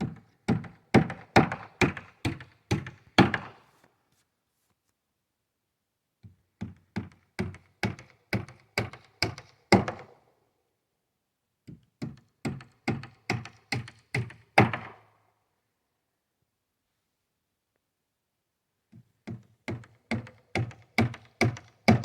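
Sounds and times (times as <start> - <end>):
hammer driving nails into wood: 0.1 - 3.5, 6.6 - 10.1, 11.7 - 15.0, 19.2 - 22.0.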